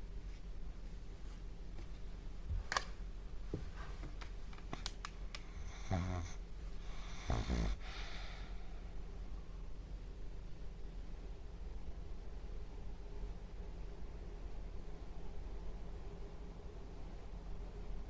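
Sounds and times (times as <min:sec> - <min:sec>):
steady low hum: 0:00.0 - 0:18.0
dog snoring: 0:05.5 - 0:08.4.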